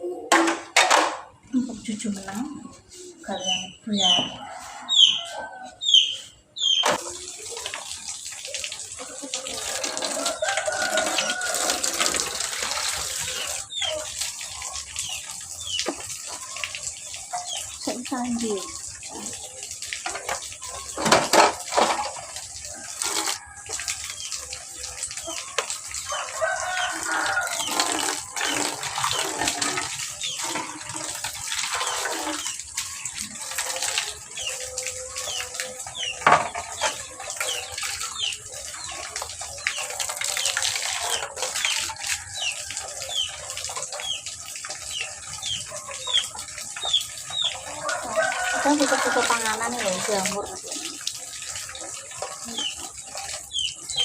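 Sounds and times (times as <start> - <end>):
dishes knocking together: 0.3 - 1.3
water running from a tap: 0.3 - 54.0
chickens chirping: 2.3 - 7.6, 24.4 - 49.4.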